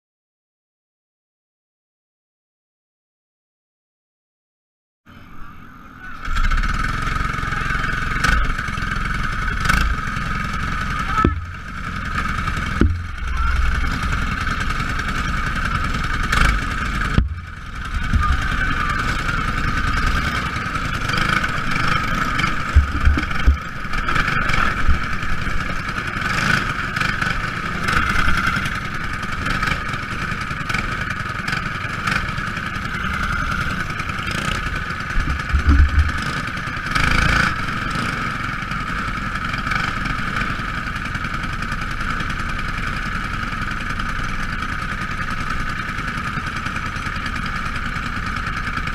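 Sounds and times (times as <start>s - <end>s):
race car engines buzzing: 5.1s - 48.9s
low rumbles and thumps: 9.4s - 26.2s, 35.0s - 36.5s.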